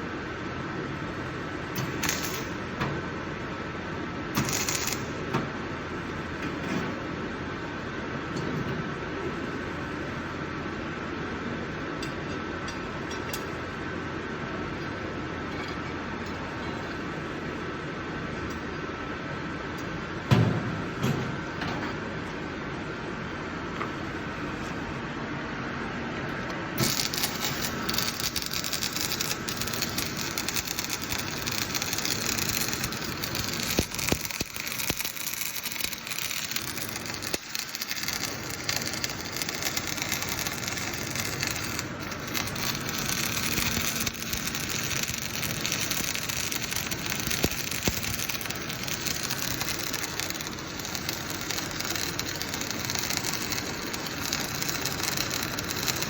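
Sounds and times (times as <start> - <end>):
arc welding crackle: 0.8 - 5.3, 26.7 - 56.0.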